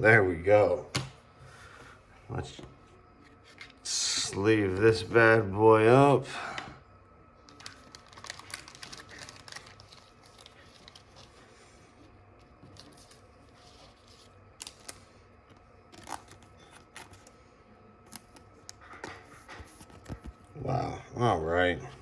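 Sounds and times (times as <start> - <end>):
plastic sleeve rustling: 7.5 - 17.4.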